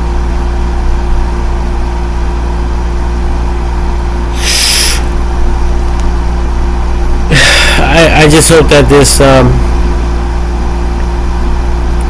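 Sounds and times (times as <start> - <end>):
short breathy hiss: 4.3 - 5.1
car engine idling: 5.0 - 12.0.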